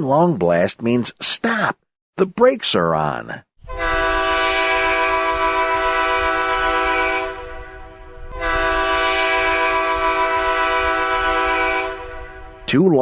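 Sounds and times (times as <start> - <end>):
locomotive air horn blasts: 3.6 - 12.7.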